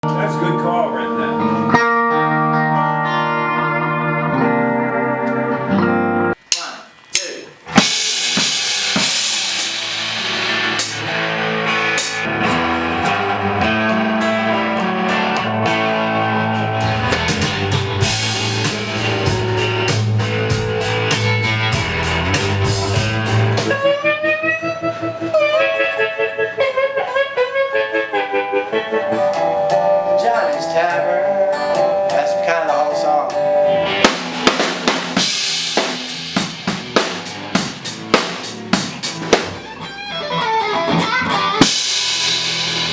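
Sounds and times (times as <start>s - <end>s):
rock band music: 0.0s - 6.8s, 7.4s - 42.9s
bass guitar: 0.0s - 42.9s
lead guitar with pitch bends: 0.0s - 42.9s
drum kit: 6.4s - 24.2s, 33.3s - 42.9s.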